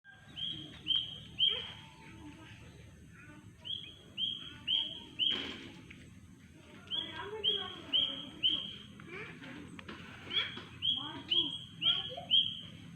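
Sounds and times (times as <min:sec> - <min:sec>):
bird chirping: 0:00.1 - 0:02.7, 0:03.6 - 0:05.5, 0:06.9 - 0:09.0, 0:10.3 - 0:12.8.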